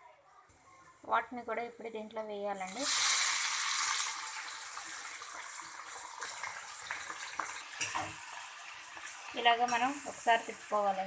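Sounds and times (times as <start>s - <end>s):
beans sizzling in hot oil: 2.5s - 11.0s.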